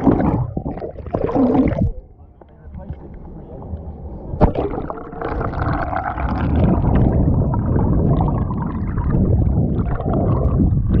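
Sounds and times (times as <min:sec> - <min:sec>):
crackling bubbles: 0:00.0 - 0:11.0
muffled water sloshing and gurgling: 0:00.0 - 0:11.0
constant low rumble: 0:01.8 - 0:11.0.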